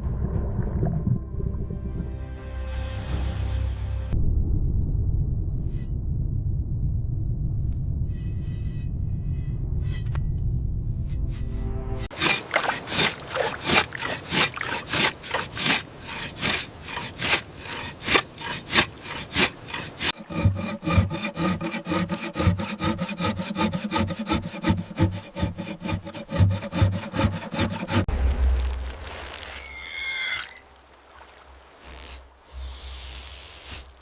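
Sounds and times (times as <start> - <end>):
blade sawing through net: 12.1 - 28.1.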